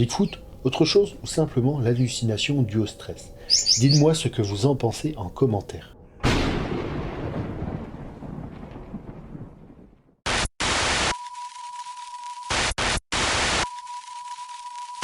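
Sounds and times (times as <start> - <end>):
tv static bursts: 10.3 - 11.2, 12.4 - 14.6.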